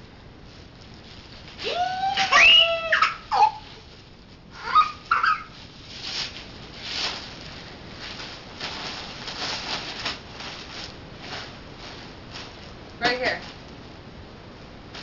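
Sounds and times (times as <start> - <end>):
bubble wrap crinkling: 0.4 - 13.8
high vocal squeaks: 1.7 - 3.8, 4.6 - 5.6.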